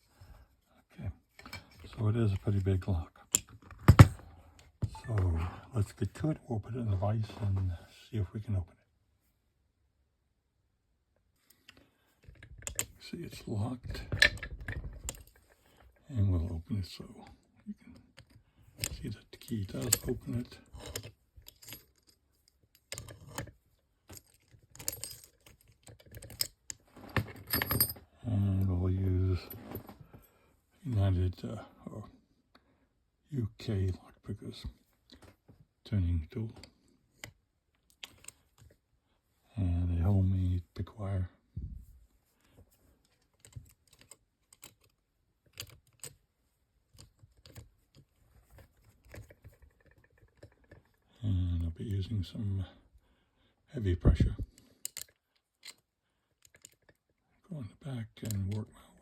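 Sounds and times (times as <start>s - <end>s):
lock picking metal clicks: 12.6s - 13.0s, 24.1s - 26.8s, 43.2s - 46.2s, 54.8s - 57.1s
key turning in padlock: 18.2s - 22.2s, 24.2s - 26.8s, 43.2s - 46.2s, 54.8s - 57.1s.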